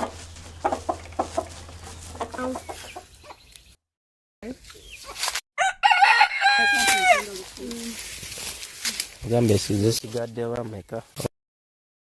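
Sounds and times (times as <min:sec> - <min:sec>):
chickens clucking: 0:00.0 - 0:03.8.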